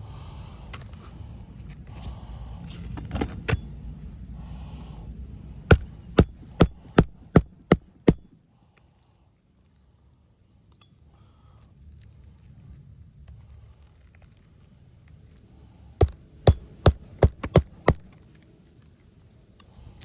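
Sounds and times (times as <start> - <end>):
low steady rumble: 0.0 - 8.3, 16.0 - 18.2
hammer striking nail: 5.7 - 8.3, 16.0 - 18.1.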